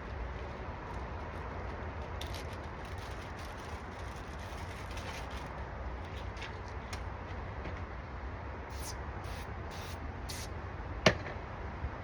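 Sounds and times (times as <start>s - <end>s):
headlight lens sanding: 8.7s - 10.5s.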